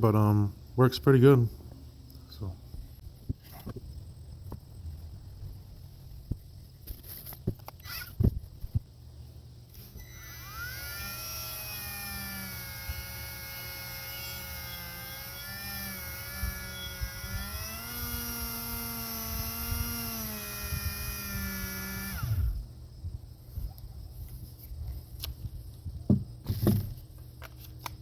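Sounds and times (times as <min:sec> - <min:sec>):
rotary tool whine: 0:07.0 - 0:08.8, 0:09.7 - 0:22.7.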